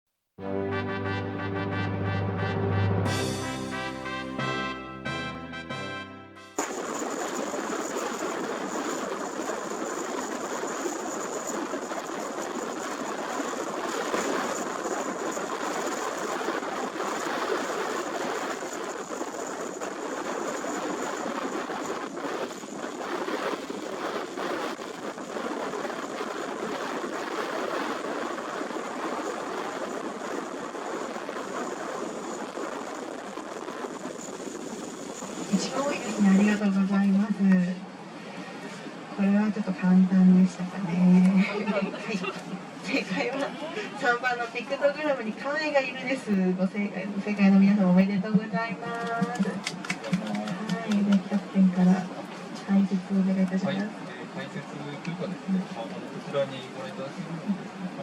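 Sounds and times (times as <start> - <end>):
faint high whine: 6.2 - 47.3
strong gusty wind: 6.6 - 58.0.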